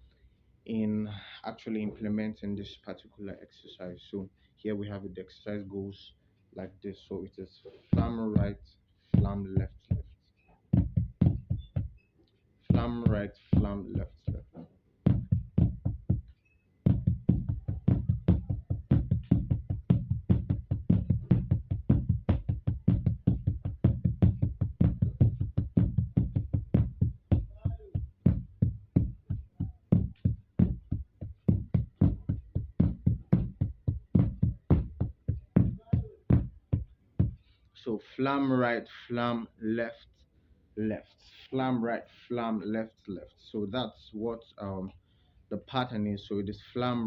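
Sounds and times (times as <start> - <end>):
drumsticks playing flams on drum: 9.2 - 10.0, 12.7 - 16.3, 16.9 - 37.4.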